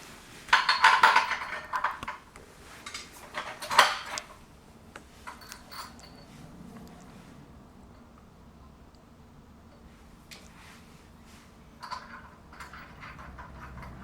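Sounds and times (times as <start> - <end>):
metal hardware clinking: 5.2 - 6.9, 11.8 - 14.0.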